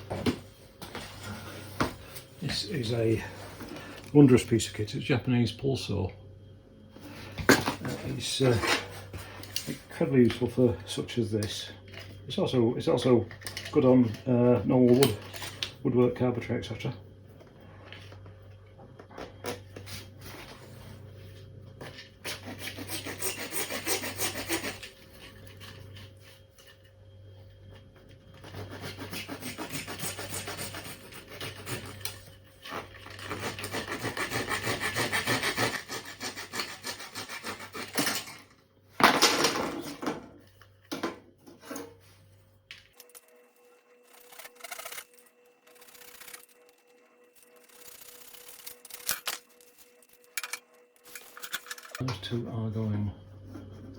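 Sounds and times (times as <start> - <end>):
saw cutting plastic: 22.2 - 25.6, 28.4 - 38.3, 43.0 - 51.3.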